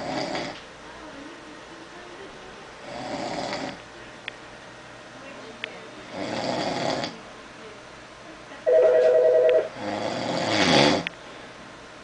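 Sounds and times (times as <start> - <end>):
person snoring: 0.0 - 0.6, 2.8 - 3.8, 6.1 - 7.1, 9.8 - 11.1
telephone ringing with warbling trill: 8.7 - 9.7.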